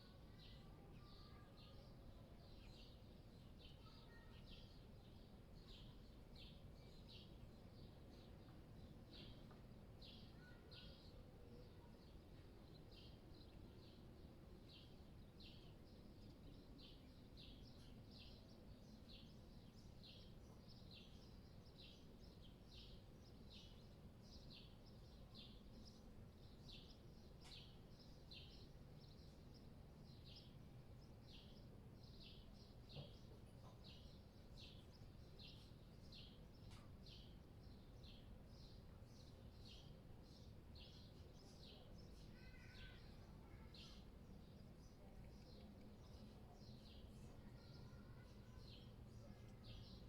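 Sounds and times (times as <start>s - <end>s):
songbird chirping: 0.0s - 50.0s.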